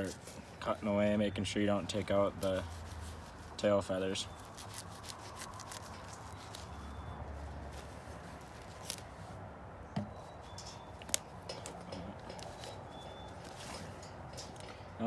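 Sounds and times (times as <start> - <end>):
knife scraping meat: 2.1 - 9.2.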